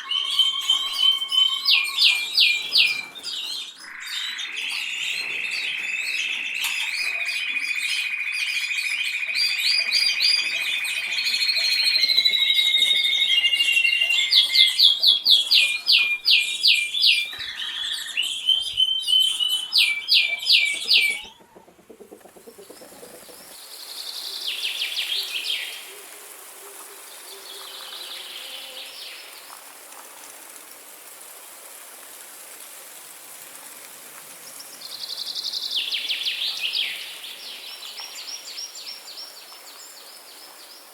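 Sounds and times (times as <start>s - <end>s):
songbirds singing: 0.0s - 29.5s, 34.4s - 40.9s
faint steady hiss: 20.8s - 40.9s.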